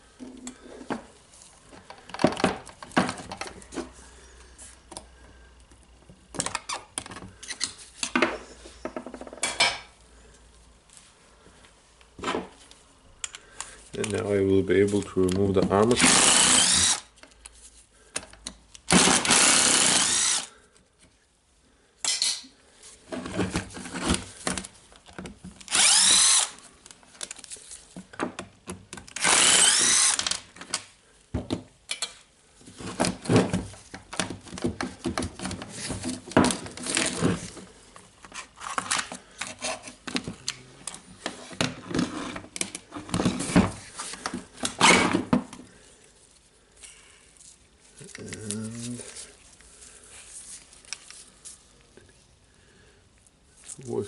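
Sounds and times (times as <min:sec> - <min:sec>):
power drill motor whirring: 0:16.0 - 0:17.1, 0:18.9 - 0:20.5, 0:25.7 - 0:26.6, 0:29.1 - 0:30.4.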